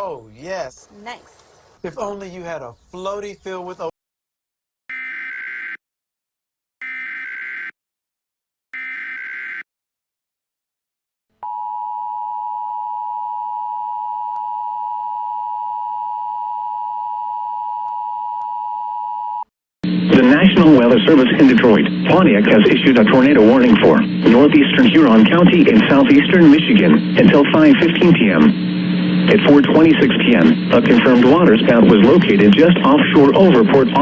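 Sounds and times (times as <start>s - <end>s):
long steady attention tone: 11.4s - 34.0s.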